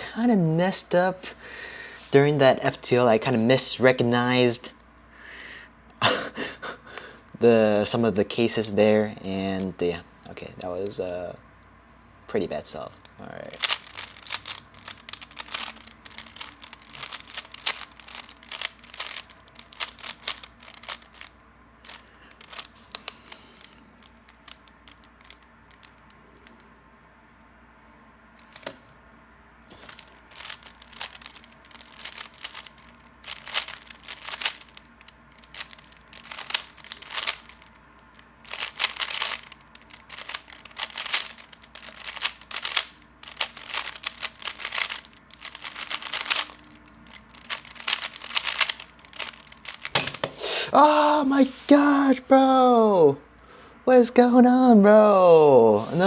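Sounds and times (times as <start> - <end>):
puzzle cube plastic clicks: 12.9 - 26.7, 28.4 - 28.8, 29.7 - 50.3.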